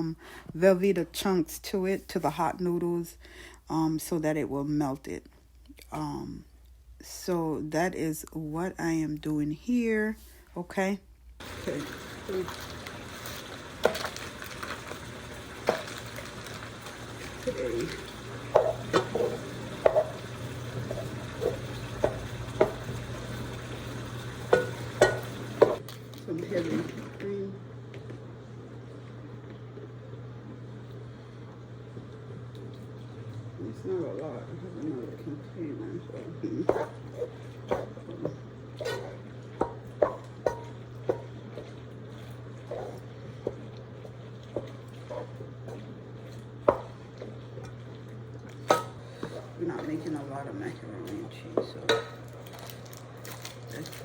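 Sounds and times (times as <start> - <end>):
steady low hum: 5.6 - 54.0
utensils clinking against bowl: 11.4 - 25.9, 48.5 - 50.2, 51.0 - 54.0
spoon knocking against pot: 18.5 - 20.2, 20.9 - 23.0, 24.5 - 25.8
wet squelching of stirred macaroni: 36.7 - 50.4.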